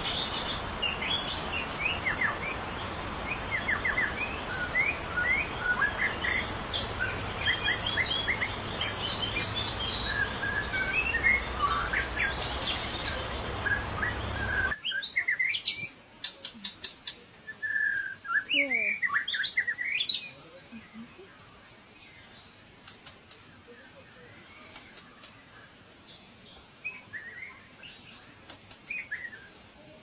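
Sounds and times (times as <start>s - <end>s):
steady background hiss: 0.0s - 30.0s
bird singing whistled notes: 3.3s - 20.4s, 23.7s - 29.5s.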